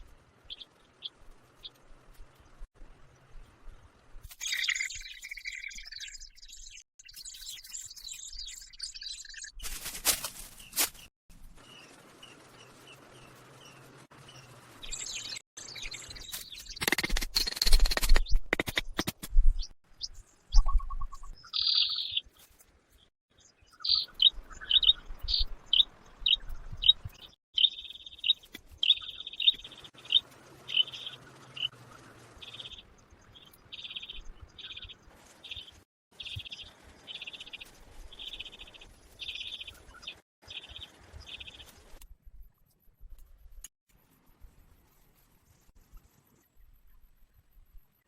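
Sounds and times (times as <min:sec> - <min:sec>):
bird chirping: 0:00.4 - 0:02.6, 0:04.4 - 0:09.8, 0:10.5 - 0:22.4, 0:23.3 - 0:42.0.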